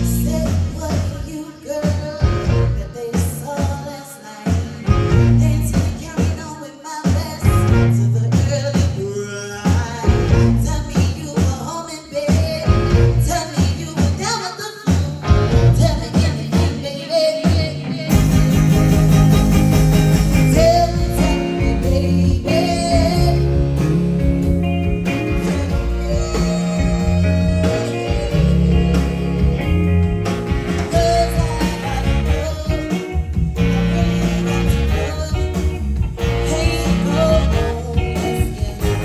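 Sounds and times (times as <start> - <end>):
person singing: 0.0 - 24.4, 25.0 - 39.0
live band playing: 0.0 - 39.0.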